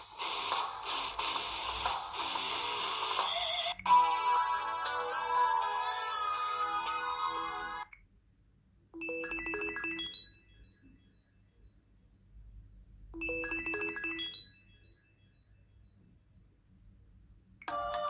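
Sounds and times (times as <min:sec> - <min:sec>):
phone ringtone jingle: 0:03.9 - 0:07.8, 0:09.0 - 0:10.6, 0:13.2 - 0:14.8
fuller phone tone: 0:17.7 - 0:18.0.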